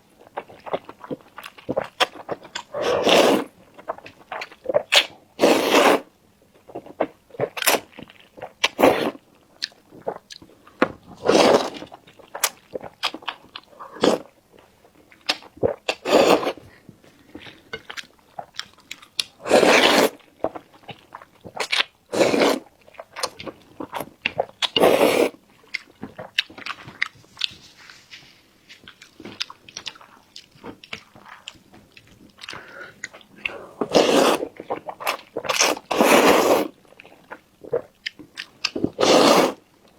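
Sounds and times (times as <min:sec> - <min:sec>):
chewing and biting food: 0:00.2 - 0:05.1, 0:17.2 - 0:39.9.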